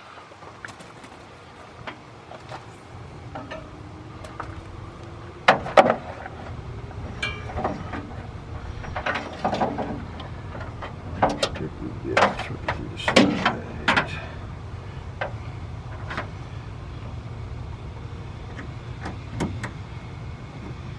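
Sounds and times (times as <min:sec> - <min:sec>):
metallic clanks at battery: 0:07.1 - 0:11.6.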